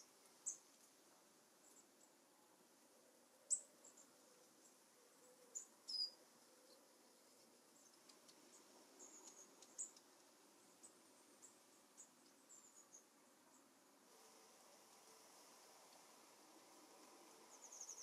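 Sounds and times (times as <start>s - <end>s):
birds twittering calls: 3.5s - 10.0s, 17.4s - 18.0s.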